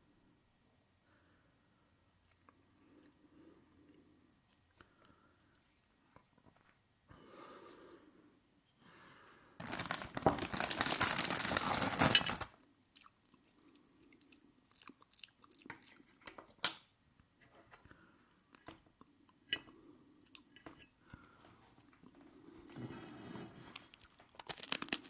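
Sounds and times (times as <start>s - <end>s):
loud crunching: 9.6s - 12.5s
quiet chewing: 12.9s - 16.4s, 17.7s - 22.4s.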